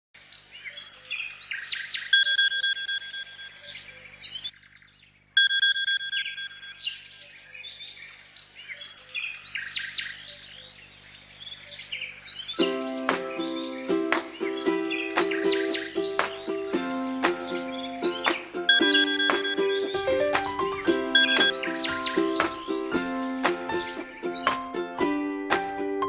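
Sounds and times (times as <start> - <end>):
electronic alarm beeping: 2.2 - 3.6, 5.4 - 7.0, 18.7 - 19.8, 21.1 - 21.5
birds chirping and singing: 3.5 - 5.2, 6.8 - 25.6.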